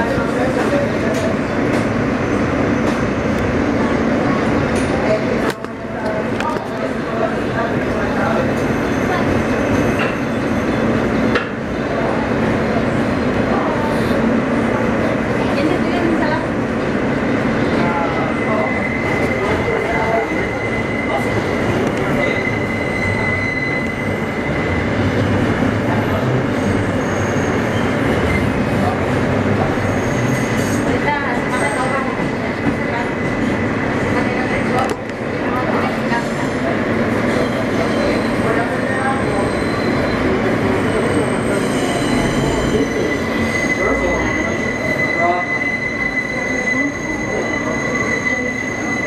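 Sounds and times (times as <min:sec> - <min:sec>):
subway wheels rumbling and rattling: 0:00.0 - 0:49.0
high steady squeal: 0:18.3 - 0:25.2, 0:37.4 - 0:49.0.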